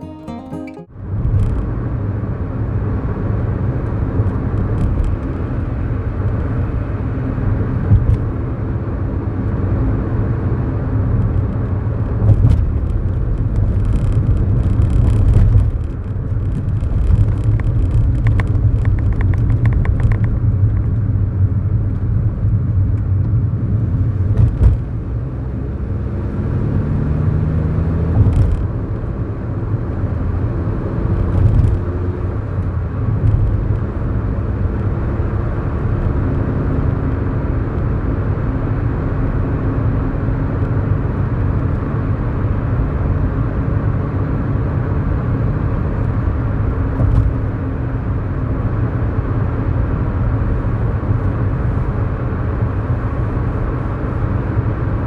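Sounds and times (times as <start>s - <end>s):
road and tyre rumble: 3.6s - 55.0s.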